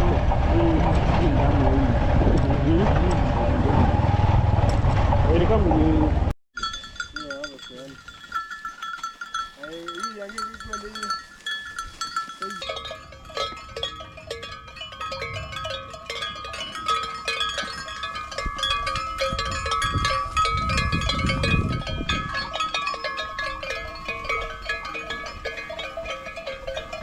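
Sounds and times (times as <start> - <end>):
low rumble: 0.0 - 6.3
metal bells clanking: 6.6 - 27.0.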